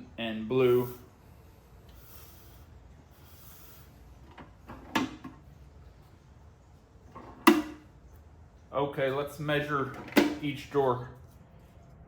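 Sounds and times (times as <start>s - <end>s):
drawer clunks: 9.9s - 10.4s.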